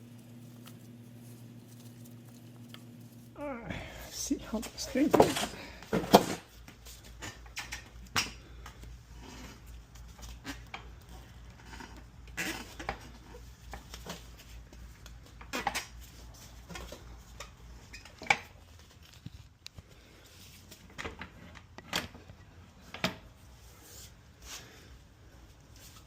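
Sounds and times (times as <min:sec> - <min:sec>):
low hum: 0:00.0 - 0:05.0.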